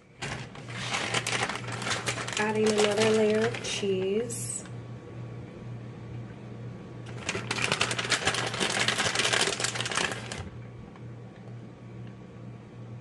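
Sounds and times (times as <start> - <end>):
plastic bag crackling rustle: 0.2 - 4.3, 7.1 - 10.5.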